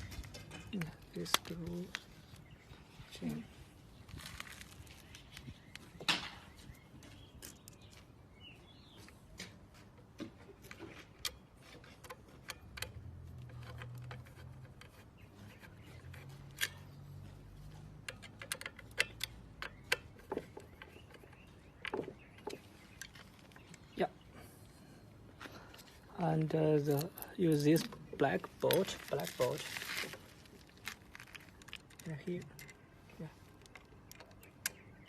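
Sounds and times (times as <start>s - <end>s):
metal lock parts clicking: 10.8s - 23.8s, 26.8s - 35.0s.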